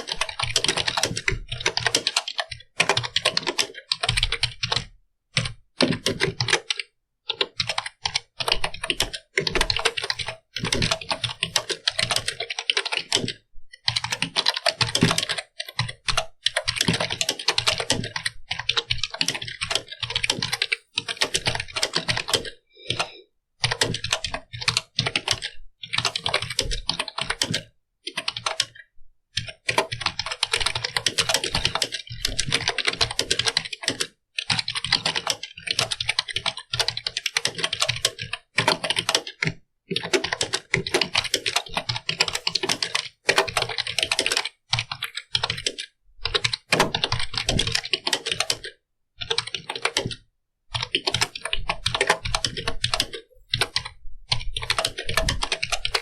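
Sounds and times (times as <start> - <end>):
keyboard typing: 0.0 - 28.8, 29.4 - 56.0.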